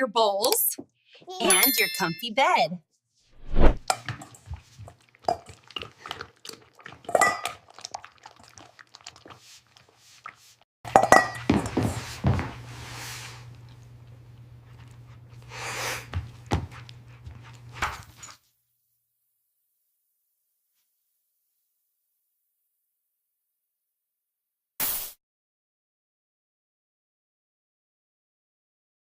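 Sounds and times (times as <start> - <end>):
brief swishes: 3.4 - 3.8
dish knocking and clinking: 10.9 - 11.7.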